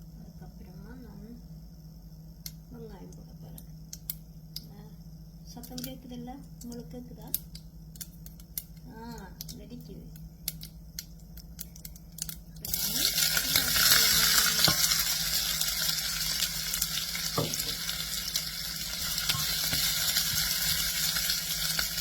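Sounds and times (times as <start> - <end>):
seeds popping in hot oil: 5.6 - 22.0
onions sizzling in oil: 12.6 - 22.0.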